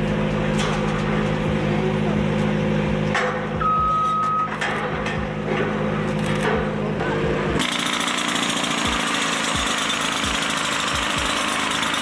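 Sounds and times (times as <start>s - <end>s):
vehicle engine running: 0.0s - 12.0s
short high beep: 3.6s - 4.6s.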